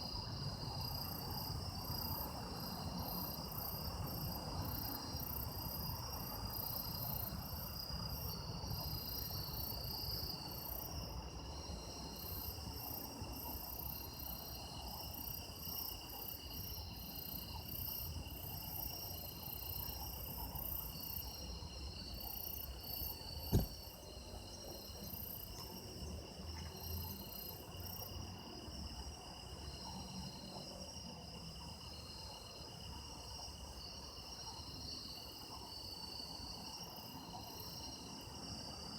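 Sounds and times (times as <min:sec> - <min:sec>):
insect chirping: 0:06.5 - 0:28.2.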